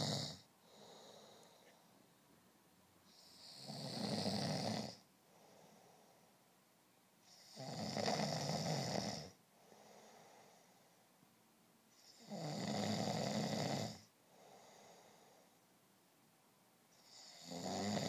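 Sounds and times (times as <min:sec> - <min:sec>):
person snoring: 0:00.0 - 0:01.8, 0:03.1 - 0:06.2, 0:07.2 - 0:10.9, 0:12.0 - 0:15.5, 0:17.0 - 0:18.0.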